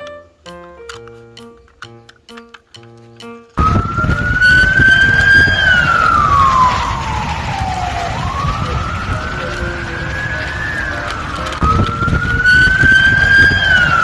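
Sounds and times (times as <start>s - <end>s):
low rumble: 3.6s - 14.0s
siren wailing: 3.6s - 14.0s.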